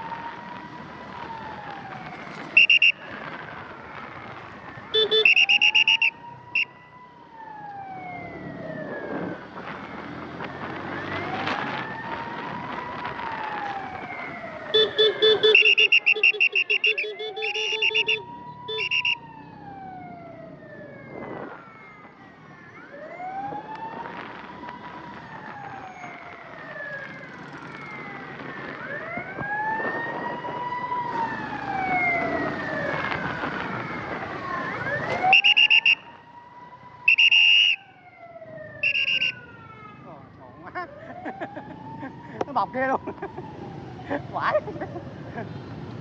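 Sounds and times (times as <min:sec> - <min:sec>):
ambulance siren wailing: 0:00.0 - 0:46.0
traffic noise: 0:00.0 - 0:46.0
short loud beeps: 0:05.0 - 0:06.1, 0:14.8 - 0:19.2, 0:38.8 - 0:39.3.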